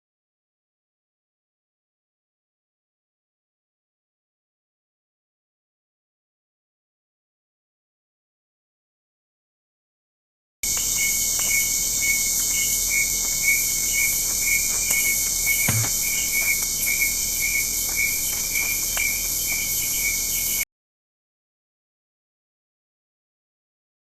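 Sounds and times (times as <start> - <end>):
crickets chirping: 10.6 - 20.6
brief low thud: 15.7 - 16.1.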